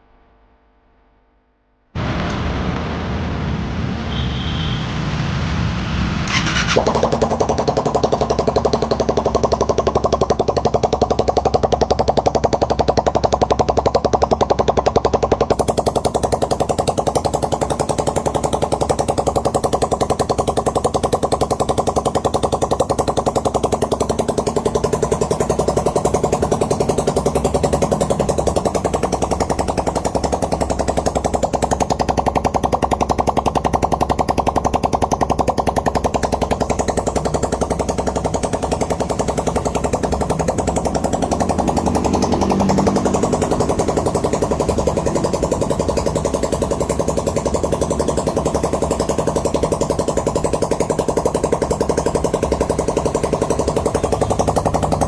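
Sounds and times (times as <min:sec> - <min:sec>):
single-cylinder engine running: 0:06.2 - 0:55.0.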